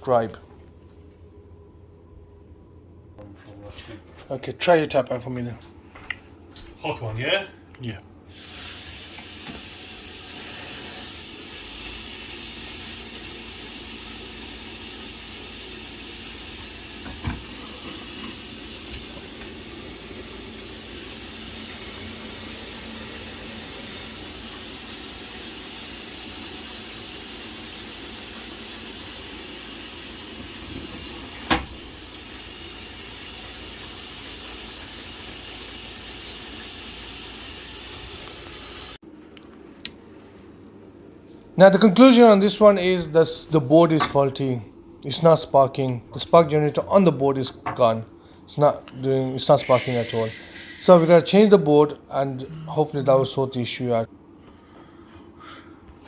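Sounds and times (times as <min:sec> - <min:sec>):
boiler running with a hiss: 0:08.2 - 0:39.0, 0:48.2 - 0:51.5.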